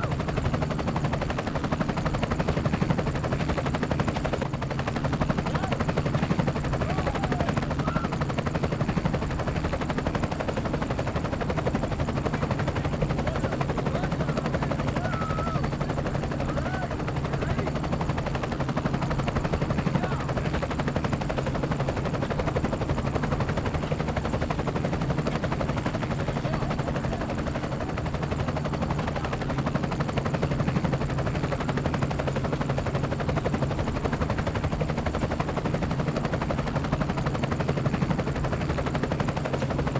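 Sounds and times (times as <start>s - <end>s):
helicopter rotor chopping: 0.0s - 39.9s.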